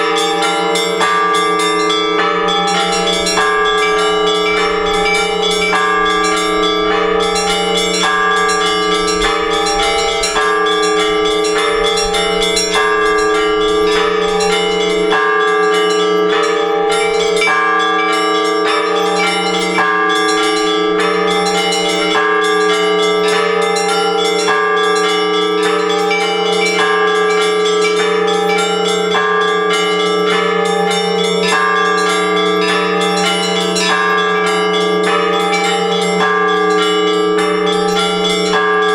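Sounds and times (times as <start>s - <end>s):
deep bell humming: 0.0s - 28.8s
smaller bells striking: 0.0s - 38.9s.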